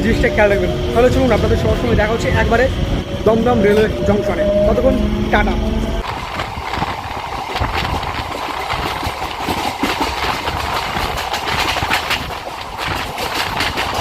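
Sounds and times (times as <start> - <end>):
train coach rumble and rattle: 0.0 - 14.0
train wheels clattering: 6.0 - 14.0.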